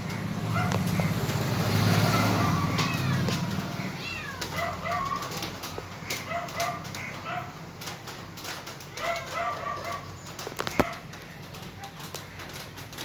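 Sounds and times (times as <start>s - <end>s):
kittens mewing: 2.0s - 5.5s.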